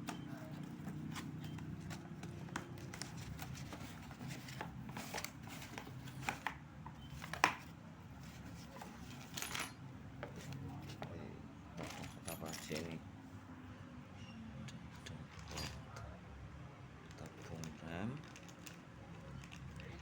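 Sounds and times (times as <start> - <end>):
small parts and packaging handled: 0.0 - 11.2, 11.8 - 13.0, 17.1 - 20.0.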